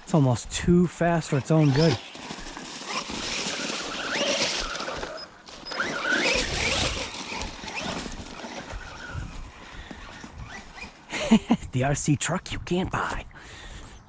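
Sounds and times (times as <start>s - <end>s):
tyre and ground noise: 0.0s - 13.3s
electric motor whine: 1.6s - 11.1s.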